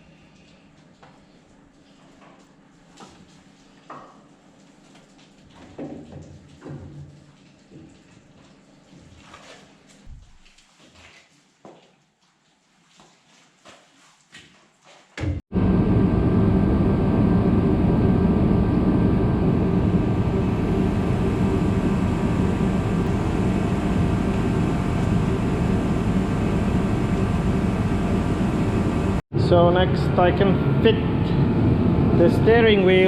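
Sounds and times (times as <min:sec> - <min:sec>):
machine droning: 0:15.5 - 0:33.0.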